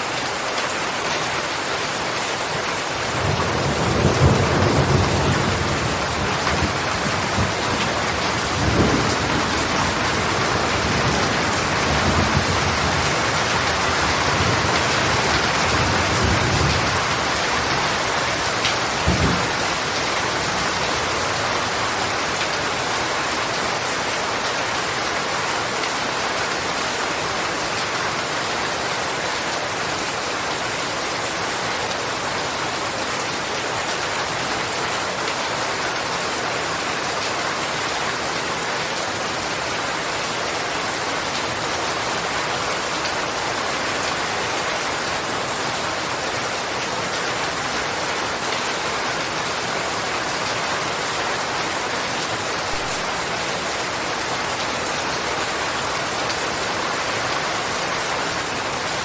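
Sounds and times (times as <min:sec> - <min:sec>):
steady rain falling: 0:00.0 - 0:59.0
thunder rumbling: 0:03.2 - 0:17.4.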